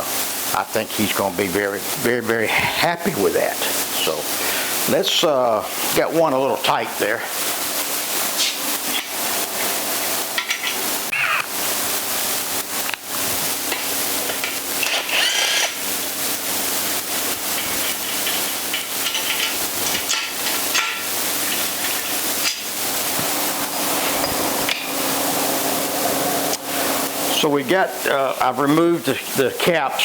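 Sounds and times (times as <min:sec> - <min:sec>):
steady hiss: 0:00.0 - 0:30.0
metal parts scraping: 0:14.4 - 0:15.9, 0:17.4 - 0:22.8.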